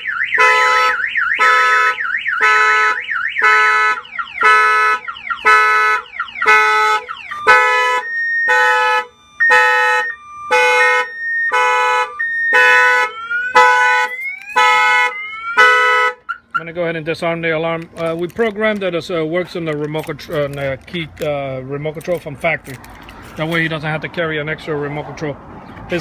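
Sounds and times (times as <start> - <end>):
car alarm siren: 0.0 - 16.9.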